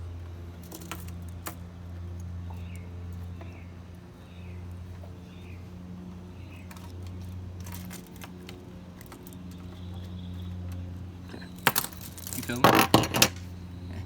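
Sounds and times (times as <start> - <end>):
low motor hum: 0.0 - 14.0
clicking and rattling: 6.5 - 13.6.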